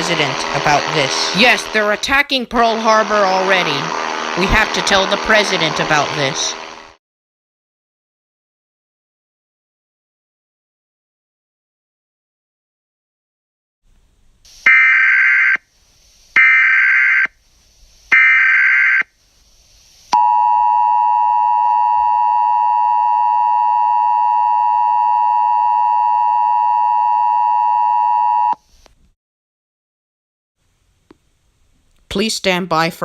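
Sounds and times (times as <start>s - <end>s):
digital header bursts: 0.0s - 7.0s.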